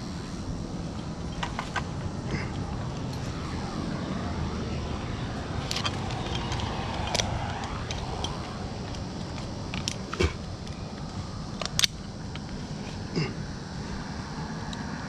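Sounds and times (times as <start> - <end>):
passing motor vehicle rumble: 0.0 - 15.0
sharp clicks: 5.6 - 12.6.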